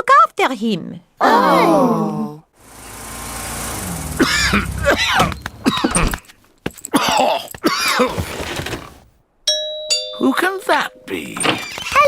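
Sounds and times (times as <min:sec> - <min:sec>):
cartoon voice coughing: 0:04.2 - 0:06.1.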